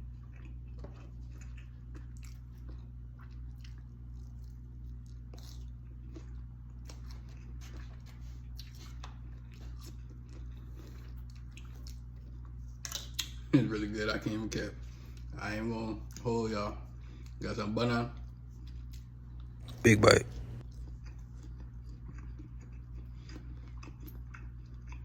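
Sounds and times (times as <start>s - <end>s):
chewing with soft crunches: 0.0s - 13.5s, 14.2s - 15.4s, 16.0s - 17.4s, 18.2s - 25.0s
steady low hum: 19.6s - 20.6s.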